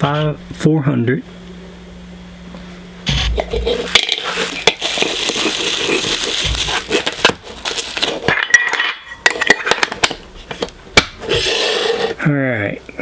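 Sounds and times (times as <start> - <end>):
packaging rustling: 3.8 - 8.7.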